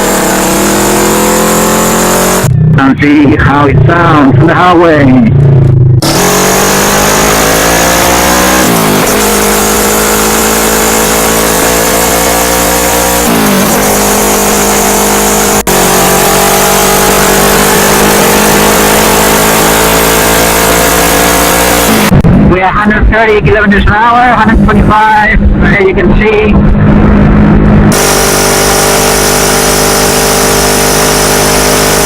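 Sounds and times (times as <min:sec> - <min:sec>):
motorcycle engine accelerating: 0:00.0 - 0:02.9, 0:05.2 - 0:22.6, 0:26.6 - 0:32.0
heavy wind rush: 0:22.1 - 0:27.9.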